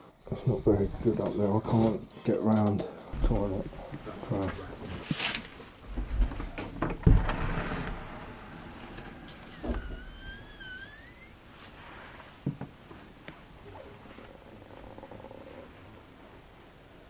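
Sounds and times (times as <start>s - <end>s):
knocks and thumps: 3.1s - 5.1s, 5.9s - 8.2s
door hinge creaking: 8.9s - 11.4s.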